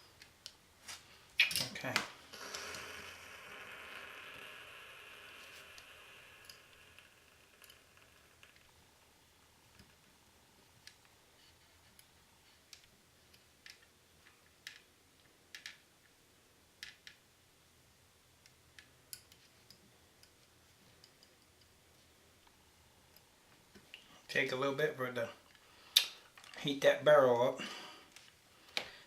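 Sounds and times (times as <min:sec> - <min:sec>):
soldering crackling clicks: 0:01.4 - 0:09.1.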